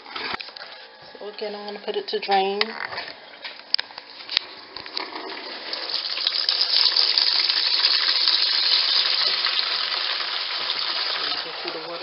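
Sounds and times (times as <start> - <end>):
water gushing into a pail: 4.9 - 12.0.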